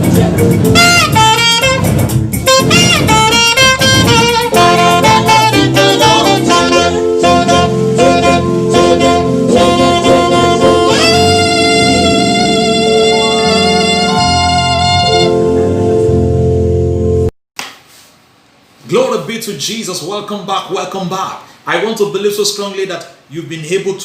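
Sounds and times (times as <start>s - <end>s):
band accompaniment: 0.0s - 17.2s
saxophone melody: 0.0s - 17.3s.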